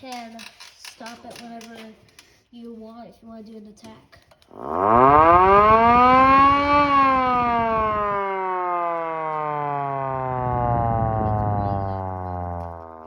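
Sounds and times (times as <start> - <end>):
air raid siren wailing: 4.5 - 13.0
low rumble: 4.6 - 13.0.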